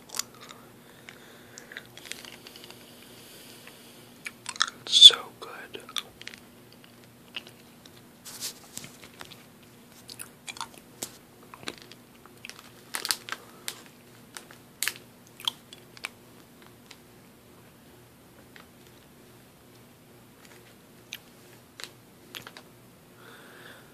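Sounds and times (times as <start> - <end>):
mouth clicks and crunches: 0.0 - 8.1, 8.8 - 17.0, 20.4 - 22.6.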